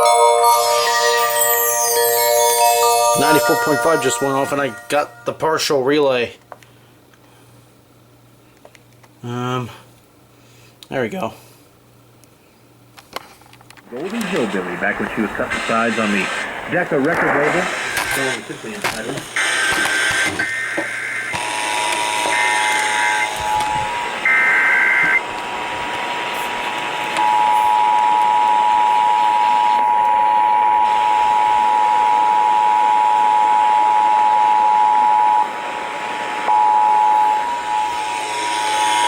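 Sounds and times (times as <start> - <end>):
two-tone attention signal: 0.0 - 5.5, 22.0 - 25.2
radio hiss: 13.8 - 28.3.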